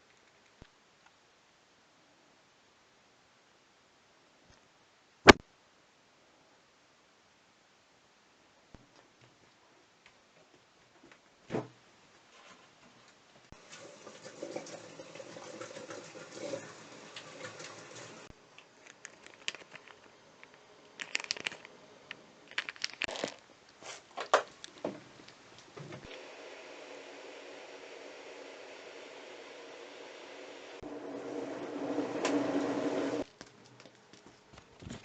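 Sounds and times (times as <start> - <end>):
cat crunching dry food: 18.6 - 24.8
rustling crackle: 18.6 - 25.7.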